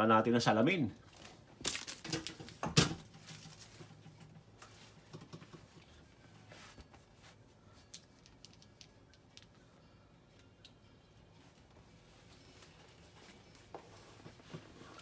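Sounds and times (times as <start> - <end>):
handling rustles: 1.1 - 9.5.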